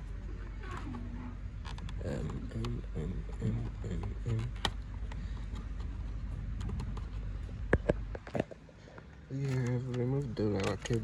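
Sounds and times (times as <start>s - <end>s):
steady low hum: 0.0s - 11.0s
laptop parts clicking and tapping: 6.6s - 8.6s.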